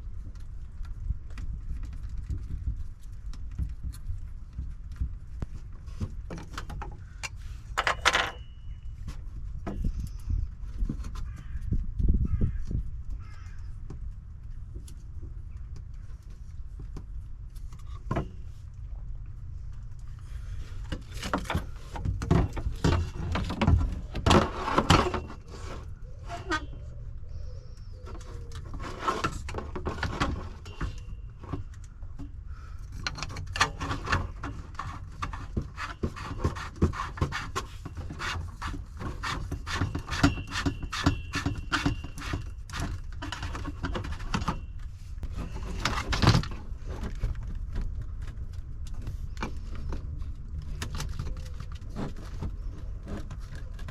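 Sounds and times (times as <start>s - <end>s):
tools and parts rattling: 5.0s - 11.6s, 19.4s - 26.8s, 28.1s - 53.9s.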